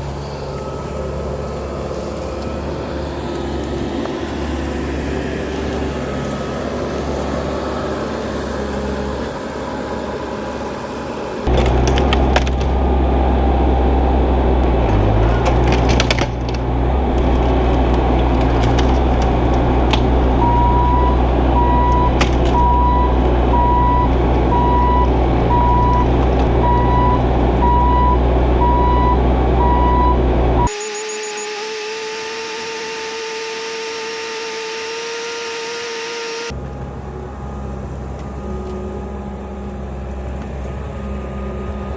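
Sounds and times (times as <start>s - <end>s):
demolition machinery running: 0.0s - 30.8s
wood cracking and splintering: 14.9s - 20.2s
backup alarm beeping: 20.4s - 31.1s.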